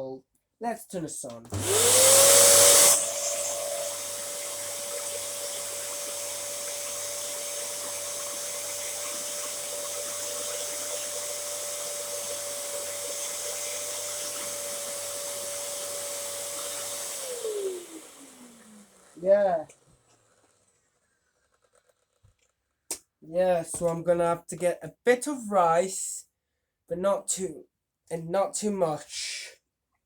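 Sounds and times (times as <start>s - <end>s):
upright vacuum cleaner running: 1.4s - 20.7s
vacuum motor winding down: 1.5s - 22.2s.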